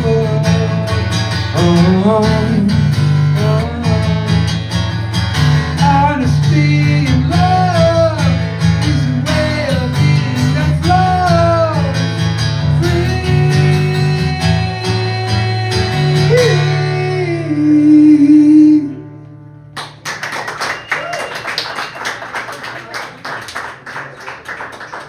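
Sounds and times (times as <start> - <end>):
man singing: 0.0 - 4.7, 5.6 - 19.2
acoustic guitar strumming: 0.0 - 20.0
audience applauding: 19.8 - 25.0
audience cheering: 20.1 - 25.0.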